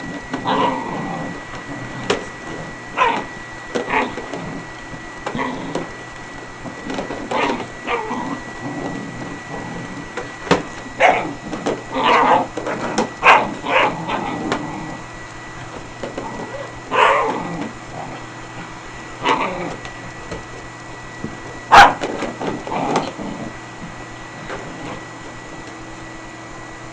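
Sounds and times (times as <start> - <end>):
vacuum cleaner running: 0.0 - 26.9
dogs barking: 2.9 - 4.2, 7.3 - 8.4, 11.0 - 14.4, 16.4 - 17.6, 21.7 - 22.1.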